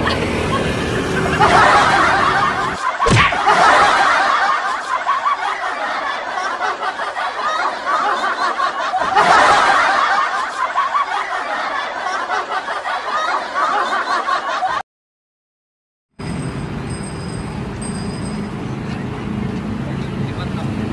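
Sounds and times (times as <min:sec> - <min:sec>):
snickering and chuckling: 0:00.0 - 0:14.8.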